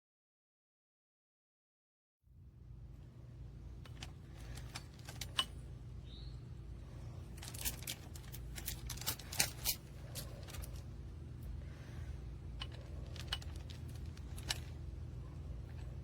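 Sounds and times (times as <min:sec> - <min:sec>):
low hum: 0:02.3 - 0:16.0
metal chain and padlock rattling: 0:03.8 - 0:05.6, 0:07.3 - 0:10.9, 0:12.6 - 0:14.8.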